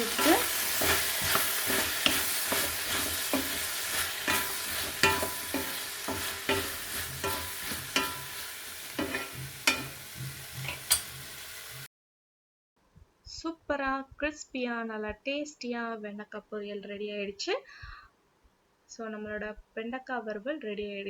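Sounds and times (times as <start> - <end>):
spatula scraping and knocking pan: 0.0 - 11.9
vegetables sizzling in a pan: 0.0 - 11.9.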